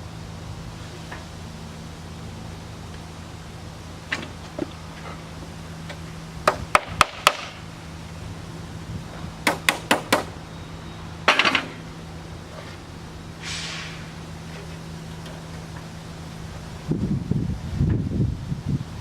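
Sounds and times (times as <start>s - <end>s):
hammer tapping on sheet metal: 9.4s - 10.3s.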